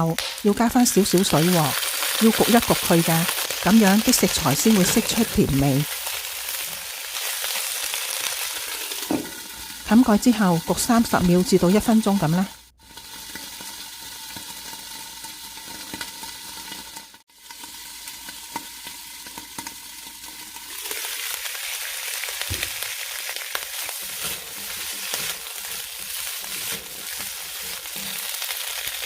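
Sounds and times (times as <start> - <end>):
vegetables sizzling in a wok: 0.0 - 29.0.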